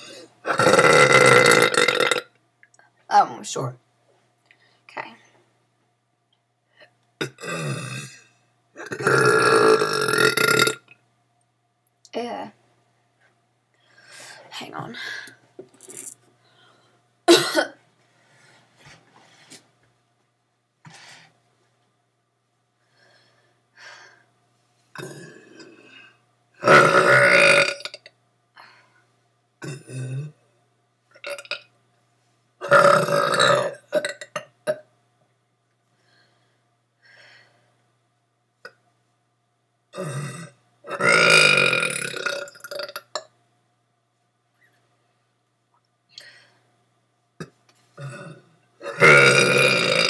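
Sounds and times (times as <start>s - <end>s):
person burping: 0.0s - 2.3s, 7.2s - 10.9s, 17.3s - 17.8s, 25.0s - 26.0s, 26.6s - 28.1s, 29.6s - 30.4s, 31.2s - 31.7s, 32.6s - 34.8s, 39.9s - 43.3s, 47.4s - 50.0s.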